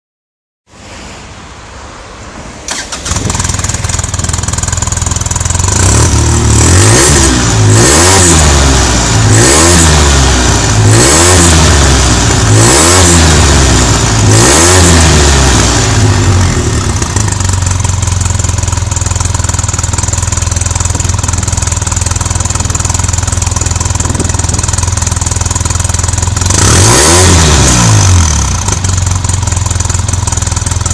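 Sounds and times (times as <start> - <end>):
engine starting and revving: 2.6 - 17.2, 26.4 - 29.0.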